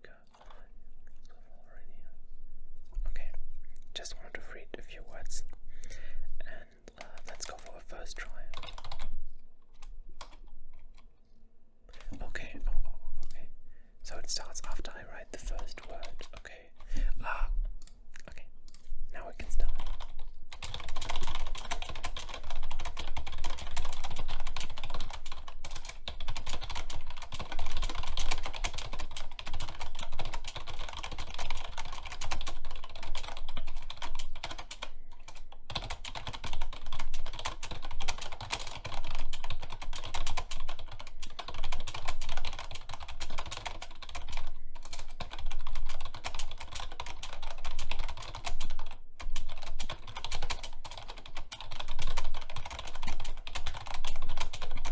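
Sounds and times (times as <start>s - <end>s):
fast typing on keyboard: 0.3s - 0.7s, 6.9s - 11.1s, 11.9s - 13.4s, 14.1s - 18.0s, 18.6s - 54.9s.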